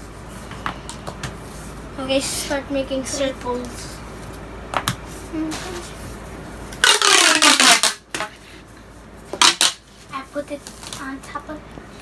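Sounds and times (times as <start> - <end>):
plastic pieces clicking: 6.8 - 8.3, 9.4 - 9.8
plastic toy tube whirring: 6.8 - 8.3, 9.4 - 9.8.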